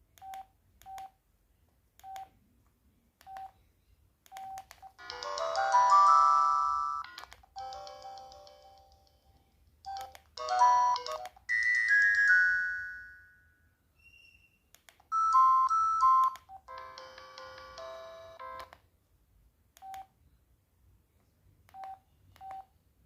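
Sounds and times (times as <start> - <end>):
phone ringtone melodies: 5.0 - 9.3, 9.9 - 13.5, 15.1 - 18.7.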